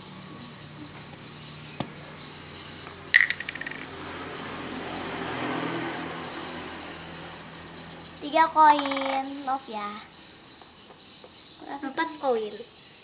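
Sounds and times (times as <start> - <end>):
hard object clattering: 3.2 - 3.9.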